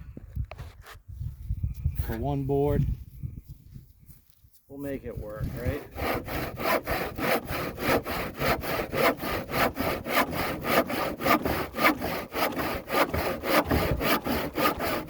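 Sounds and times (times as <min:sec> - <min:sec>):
handsaw cutting wood: 0:05.5 - 0:15.0.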